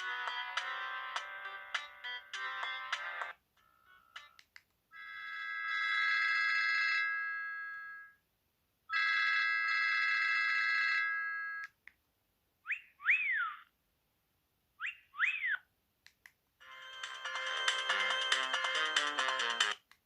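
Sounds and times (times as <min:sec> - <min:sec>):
short whistling tones: 0:12.6 - 0:13.7, 0:14.8 - 0:15.7.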